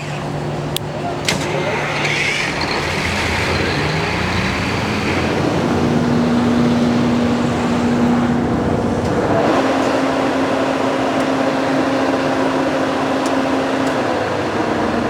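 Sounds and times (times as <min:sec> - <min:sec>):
diesel generator engine running: 0:00.0 - 0:15.0.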